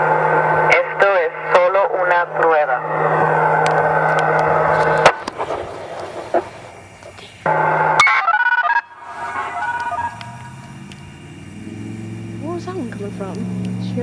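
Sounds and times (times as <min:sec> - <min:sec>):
loudspeaker electrical hum: 0:00.0 - 0:14.0
steady electronic tones: 0:00.0 - 0:14.0.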